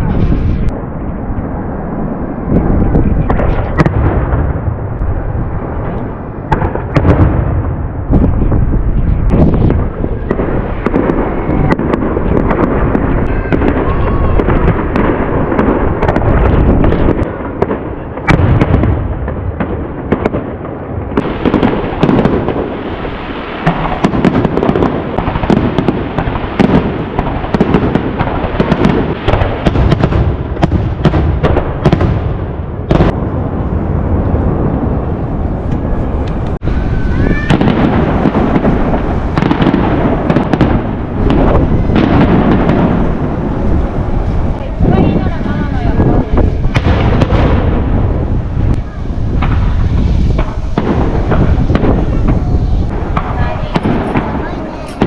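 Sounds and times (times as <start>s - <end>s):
fireworks booming and banging: 0.0s - 55.0s
fireworks crackling: 0.0s - 55.0s.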